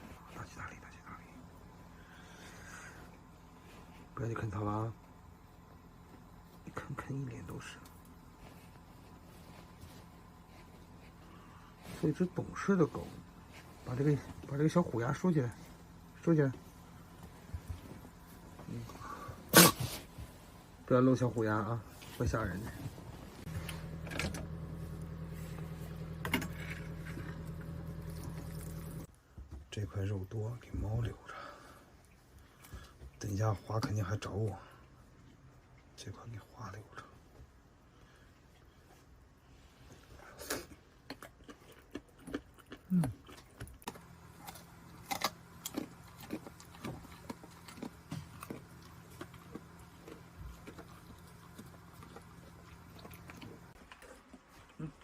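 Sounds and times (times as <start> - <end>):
low mechanical motor hum: 0.0 - 55.0
chewing: 24.9 - 29.1, 40.2 - 55.0.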